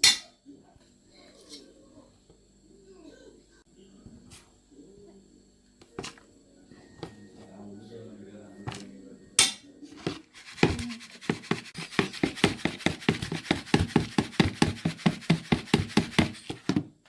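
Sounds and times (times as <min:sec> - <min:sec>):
sieve tapping: 0:08.6 - 0:16.9.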